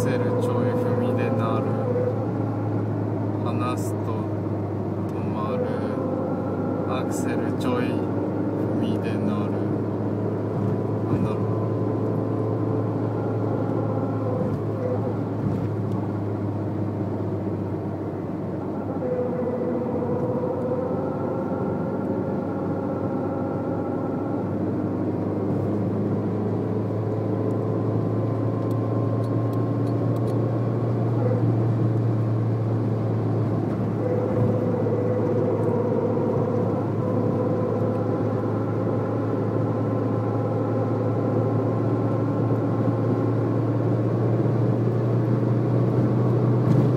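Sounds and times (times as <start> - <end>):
car engine and road drone: 0.0 - 46.9
humming tone: 0.0 - 46.9.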